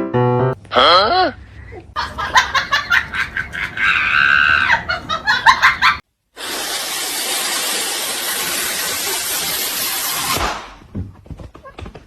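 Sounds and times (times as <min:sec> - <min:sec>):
laughter in quick bursts: 0:01.6 - 0:06.0.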